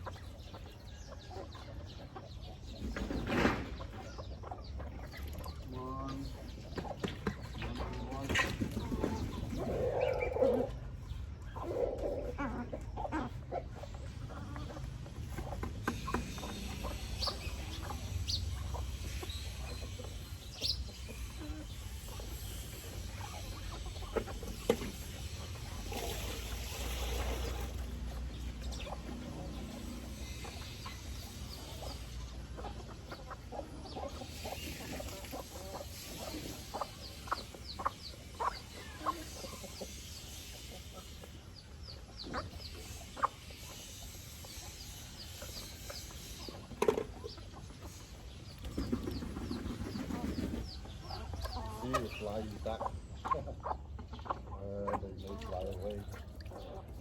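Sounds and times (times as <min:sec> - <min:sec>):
chickens clucking: 0:00.0 - 0:57.0.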